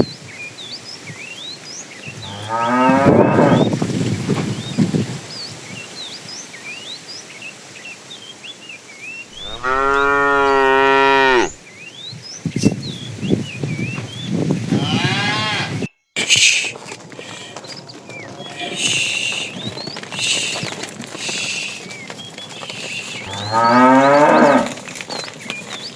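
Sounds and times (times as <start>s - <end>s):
cattle mooing: 2.2s - 3.6s, 9.4s - 11.6s, 23.2s - 24.8s
small birds chirping: 17.2s - 25.9s.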